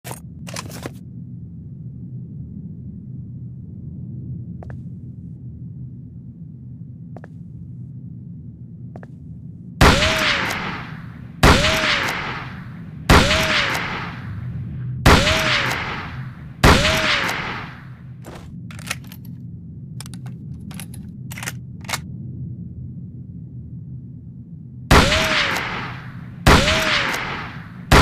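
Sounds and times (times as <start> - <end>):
rifle shots echoing: 9.8 - 14.4, 15.1 - 18.0, 24.9 - 28.0.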